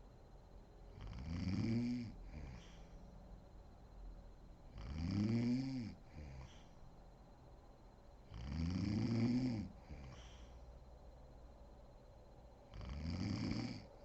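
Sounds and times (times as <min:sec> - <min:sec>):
woman snoring: 0:01.0 - 0:02.8, 0:04.8 - 0:06.5, 0:08.3 - 0:10.3, 0:12.8 - 0:13.9
breathy exhale: 0:02.2 - 0:03.0, 0:06.1 - 0:06.8, 0:09.8 - 0:10.7.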